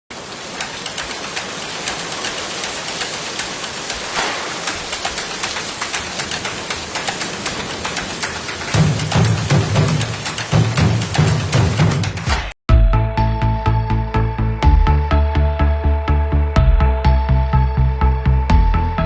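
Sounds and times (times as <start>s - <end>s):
steady rain falling: 0.1s - 12.2s
swish: 4.0s - 5.2s.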